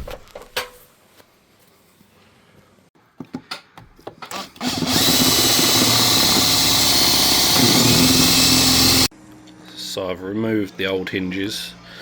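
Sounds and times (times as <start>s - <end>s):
power drill-driver running: 4.3s - 9.1s.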